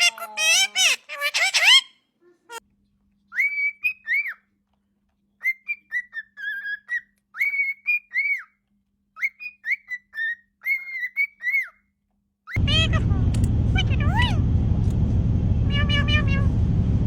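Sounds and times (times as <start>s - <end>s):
parrot whistling: 3.3s - 4.4s, 5.4s - 8.5s.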